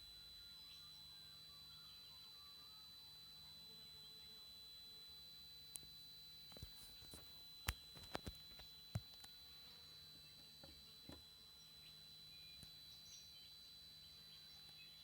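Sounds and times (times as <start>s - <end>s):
faint birdsong: 0.0s - 15.0s
faint high-pitched squeal: 0.0s - 15.0s.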